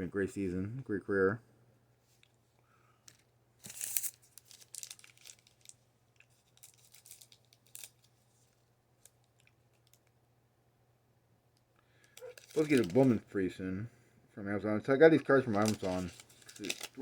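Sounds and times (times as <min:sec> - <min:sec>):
card packaging rustling and crinkling: 0:03.1 - 0:10.0, 0:12.1 - 0:13.3, 0:15.2 - 0:17.0.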